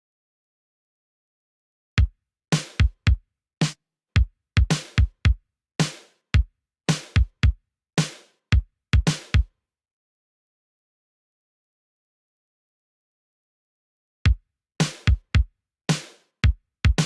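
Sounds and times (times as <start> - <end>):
drum machine kicks: 2.8 - 3.2, 4.6 - 5.2, 7.2 - 7.6, 9.0 - 9.5, 15.1 - 15.5, 16.4 - 17.0.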